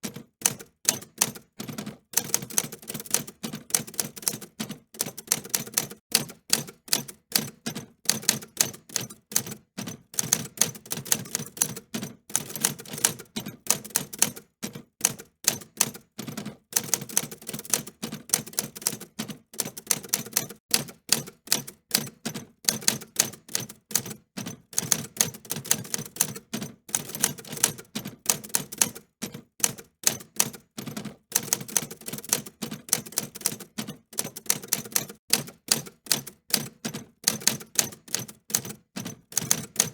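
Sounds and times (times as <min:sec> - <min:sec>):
typewriter keys clicking: 0:00.2 - 0:09.6, 0:10.2 - 0:16.1, 0:16.8 - 0:24.2, 0:24.8 - 0:39.9.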